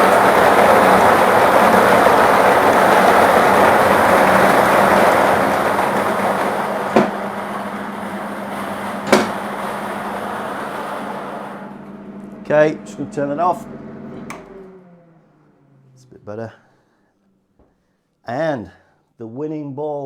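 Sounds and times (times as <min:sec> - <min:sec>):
plastic balls tumbling and clattering: 0:00.0 - 0:11.5.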